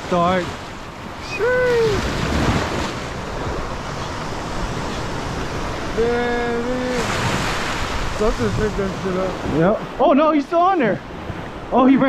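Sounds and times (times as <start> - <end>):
ocean surf on beach: 0.0 - 12.0
wind buffeting microphone: 0.9 - 10.0.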